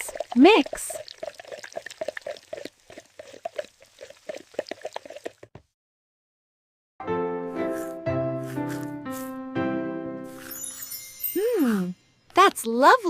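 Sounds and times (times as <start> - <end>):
batter stirred in a bowl: 0.0 - 5.5
music: 7.0 - 12.2.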